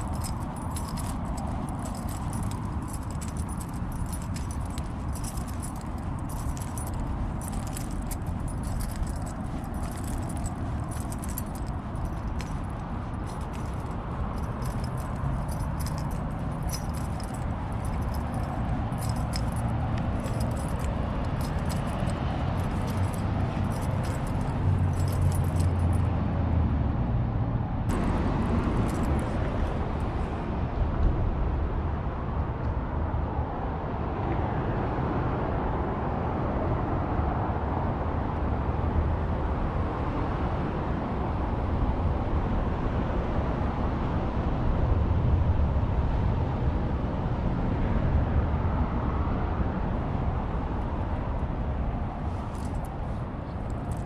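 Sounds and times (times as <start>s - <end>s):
light jingling rattles: 0.0s - 26.2s, 27.9s - 30.3s, 52.2s - 54.0s
road traffic rumble: 0.0s - 54.0s.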